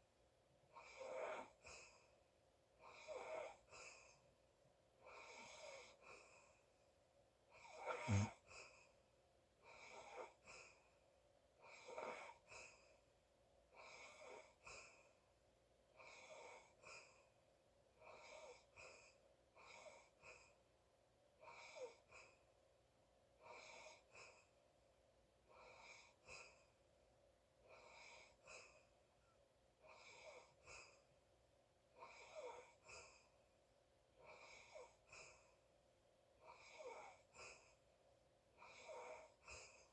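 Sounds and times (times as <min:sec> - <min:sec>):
faint snoring breaths: 0:00.7 - 0:02.2, 0:02.8 - 0:04.3, 0:05.0 - 0:06.7, 0:07.5 - 0:09.0, 0:09.6 - 0:11.0, 0:11.6 - 0:13.1, 0:13.7 - 0:15.2, 0:15.9 - 0:17.4, 0:18.0 - 0:20.6, 0:21.4 - 0:22.5, 0:23.4 - 0:24.6, 0:25.4 - 0:26.8, 0:27.6 - 0:28.9, 0:29.8 - 0:31.1, 0:31.9 - 0:33.4, 0:34.1 - 0:35.6, 0:36.4 - 0:37.8, 0:38.5 - 0:39.9
deep snort: 0:07.6 - 0:08.7.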